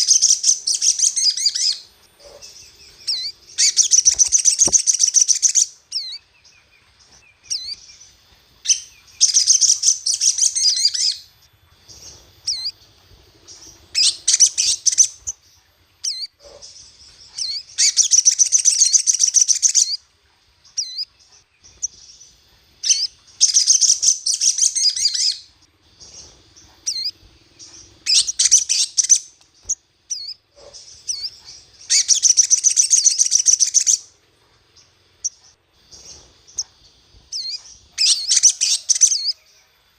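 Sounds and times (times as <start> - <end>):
bird high-pitched chattering: 0.0 - 6.3, 7.4 - 8.0, 8.6 - 12.9, 13.5 - 20.0, 20.7 - 22.0, 22.8 - 34.1, 35.2 - 39.4
bird single chirps: 0.0 - 12.9.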